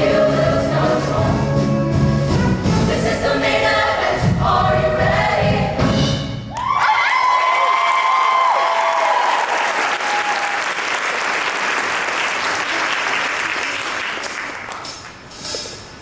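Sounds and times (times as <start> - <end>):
audience applauding: 6.6 - 15.2.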